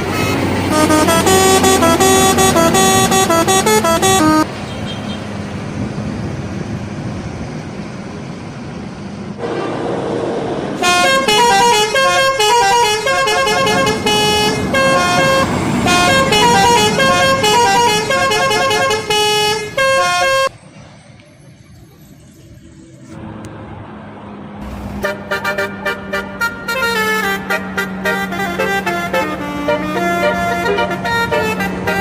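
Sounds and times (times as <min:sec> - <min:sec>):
musical bus horn melody: 0:00.0 - 0:05.2, 0:10.8 - 0:20.5, 0:25.0 - 0:32.0
bus engine: 0:00.0 - 0:32.0
road noise: 0:00.0 - 0:32.0.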